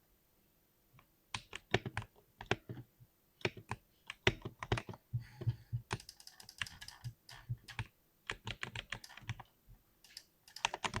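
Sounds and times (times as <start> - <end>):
mechanical keyboard typing: 3.4 - 5.0, 5.8 - 11.0.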